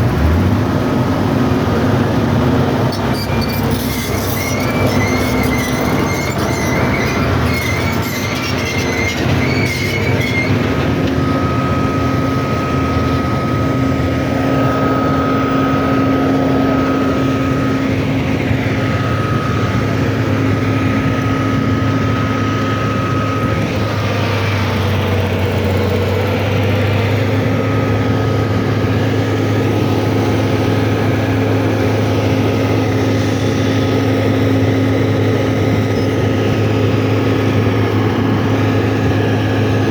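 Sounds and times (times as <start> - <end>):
large machine humming: 0.0 - 39.9
high-pitched whine: 2.9 - 26.0.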